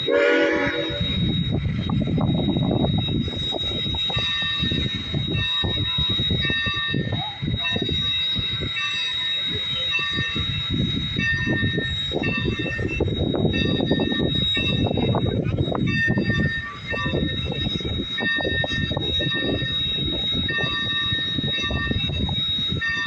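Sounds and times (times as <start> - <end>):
short high ringing tones: 0.0 - 23.0
steady high whine: 0.0 - 23.0
train rumbling and clattering: 0.0 - 23.0.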